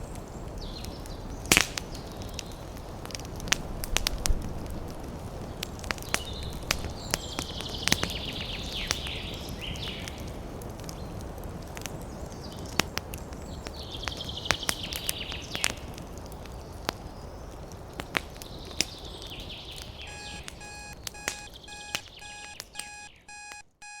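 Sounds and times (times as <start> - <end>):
campfire crackling and popping: 0.0 - 23.6
birds chirping: 6.0 - 10.2, 18.4 - 24.0
alarm clock beeping: 20.1 - 24.0.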